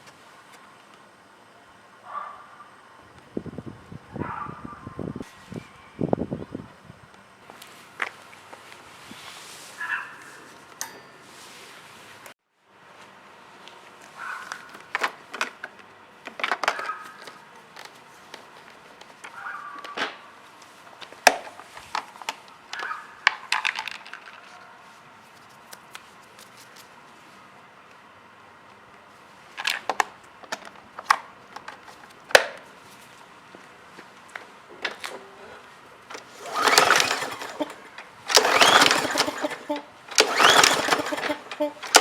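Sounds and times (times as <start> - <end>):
recoil starter rasping whir: 35.1 - 42.0
tools and metal parts clattering: 36.1 - 42.0.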